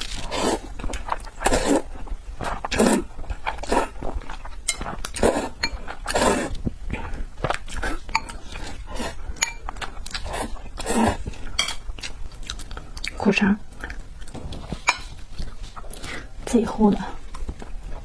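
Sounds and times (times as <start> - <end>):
wet chewing and smacking: 0.0 - 16.5, 17.2 - 18.0
utensils clinking against a bowl: 4.6 - 6.0, 8.1 - 9.8, 11.5 - 11.8, 14.7 - 15.2.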